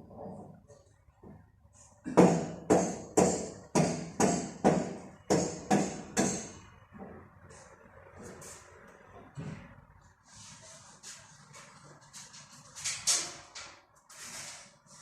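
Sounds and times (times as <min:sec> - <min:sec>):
sharp knocks: 0:02.1 - 0:06.6.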